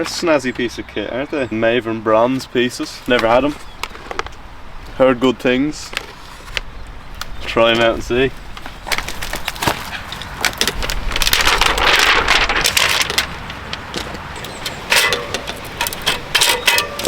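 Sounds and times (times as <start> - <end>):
packaging rustling and crinkling: 7.8 - 16.3.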